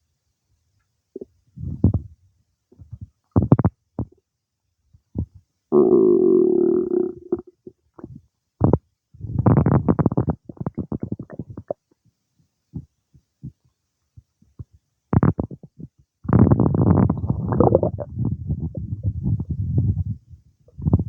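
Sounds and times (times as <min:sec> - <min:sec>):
stomach gurgling: 0:05.2 - 0:12.0, 0:14.6 - 0:21.0.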